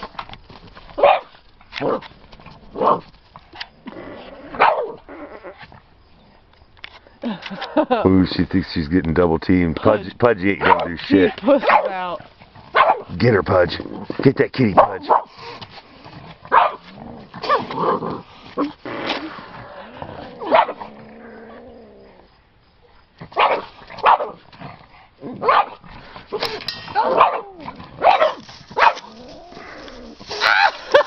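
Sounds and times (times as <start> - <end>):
dogs barking: 1.0 - 2.0, 4.5 - 5.0, 10.6 - 12.0, 12.7 - 13.2, 14.7 - 15.3, 16.5 - 17.7, 20.4 - 21.0, 23.3 - 24.4, 25.2 - 25.8, 27.0 - 29.2
dogs growling: 1.7 - 6.5, 10.6 - 14.2, 14.8 - 31.0.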